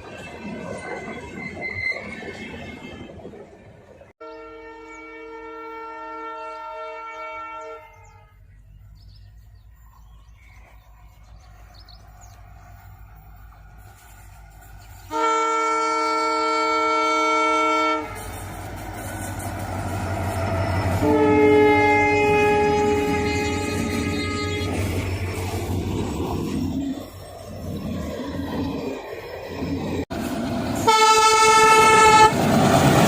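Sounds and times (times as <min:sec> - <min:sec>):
running train rumble: 0:00.0 - 0:33.0
locomotive air horn: 0:04.2 - 0:08.4, 0:15.1 - 0:18.7, 0:20.2 - 0:25.0, 0:30.8 - 0:32.4.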